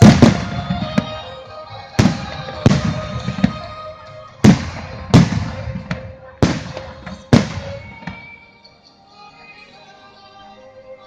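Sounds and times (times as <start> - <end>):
fireworks bursting with crackle: 0.0 - 8.6
music with long held notes: 0.0 - 11.0.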